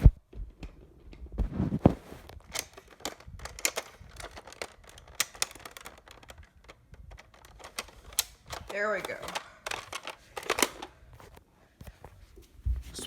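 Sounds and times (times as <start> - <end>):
plastic toy blaster clicking and rattling: 2.4 - 11.0.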